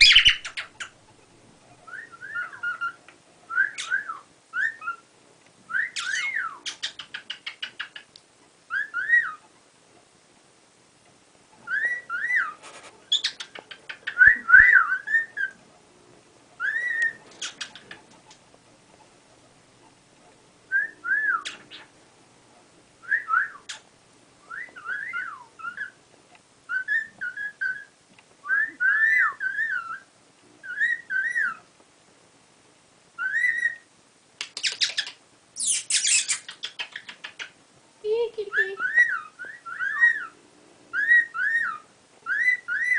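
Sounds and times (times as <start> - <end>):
cockatiel whistling: 0.0 - 0.7, 1.9 - 5.0, 5.7 - 8.0, 8.7 - 9.4, 11.7 - 15.6, 16.6 - 17.9, 20.7 - 21.9, 23.0 - 23.8, 24.4 - 26.0, 26.7 - 31.6, 33.2 - 33.9, 34.5 - 37.5, 38.8 - 42.9.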